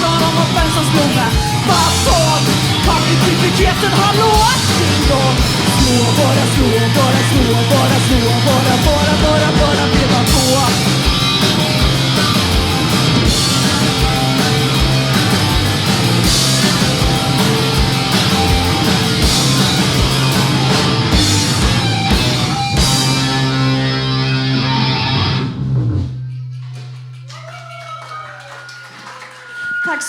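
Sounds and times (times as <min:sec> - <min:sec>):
drum kit hits: 0:00.0 - 0:23.8
punk rock band playing: 0:00.0 - 0:27.2.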